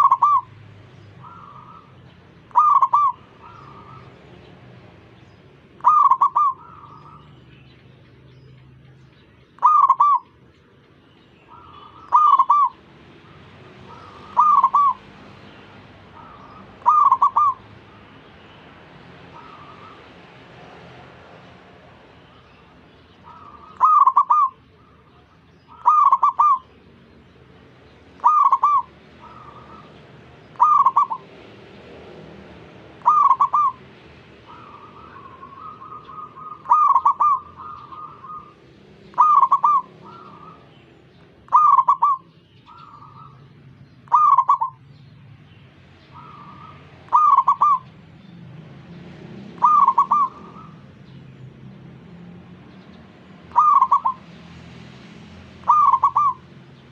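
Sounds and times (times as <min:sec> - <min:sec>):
dove cooing loudly: 0:00.0 - 0:00.6, 0:01.2 - 0:04.4, 0:05.8 - 0:07.3, 0:09.6 - 0:10.4, 0:11.5 - 0:15.4, 0:16.0 - 0:18.1, 0:19.3 - 0:20.2, 0:23.2 - 0:26.8, 0:28.2 - 0:40.7, 0:41.4 - 0:44.8, 0:46.1 - 0:48.0, 0:49.5 - 0:51.0, 0:53.5 - 0:54.3, 0:55.6 - 0:56.6
faint doves cooing: 0:00.0 - 0:07.8, 0:09.5 - 0:45.0, 0:46.0 - 0:51.5, 0:52.4 - 0:54.4, 0:55.6 - 0:56.9.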